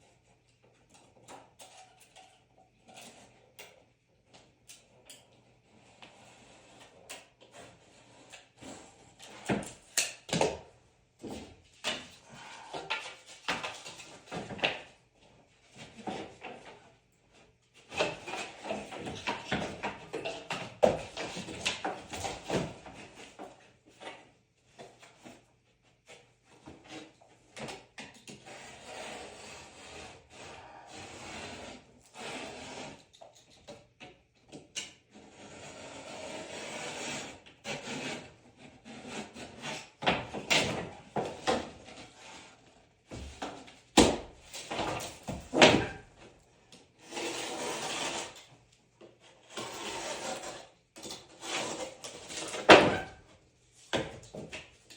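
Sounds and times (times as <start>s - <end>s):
rubbing and scraping wood: 28.4s - 33.1s, 35.0s - 54.8s.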